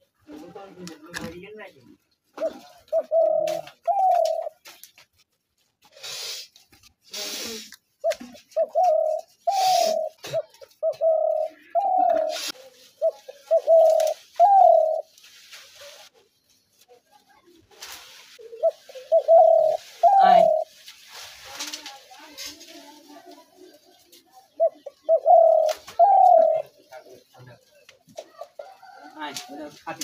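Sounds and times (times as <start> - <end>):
dove cooing: 2.3 - 4.7, 8.0 - 15.1, 18.4 - 20.8, 23.2 - 29.6
short bursts of hiss: 5.9 - 7.8.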